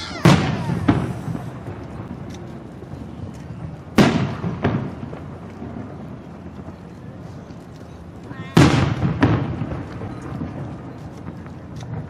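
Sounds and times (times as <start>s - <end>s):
firework shells bursting: 0.0s - 2.5s.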